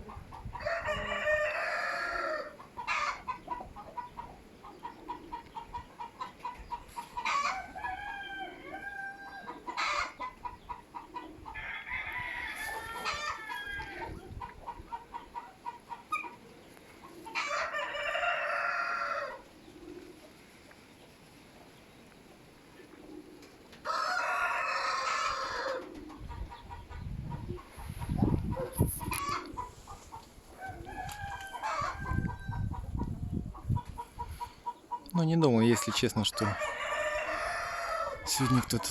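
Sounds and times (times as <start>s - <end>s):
chicken clucking: 0.0s - 11.8s, 12.6s - 20.4s, 22.8s - 38.9s
rooster crowing: 0.6s - 3.2s, 7.2s - 10.2s, 11.5s - 14.2s, 17.3s - 19.4s, 23.8s - 25.8s, 30.6s - 32.8s, 36.0s - 38.7s.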